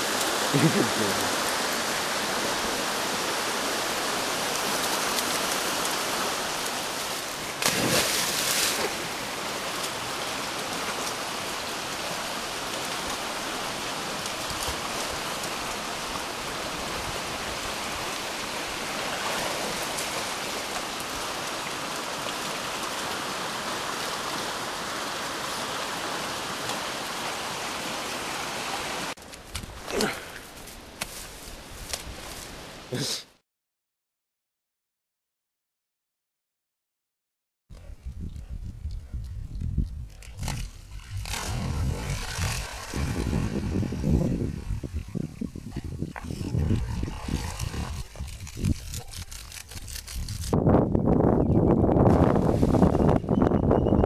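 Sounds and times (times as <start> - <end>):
rushing water: 0.0 - 29.2, 40.9 - 49.0.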